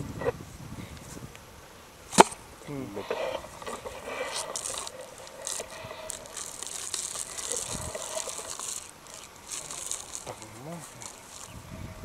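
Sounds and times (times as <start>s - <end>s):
rustling and crackling: 2.1s - 12.0s
scraping crunching noises: 2.1s - 12.0s.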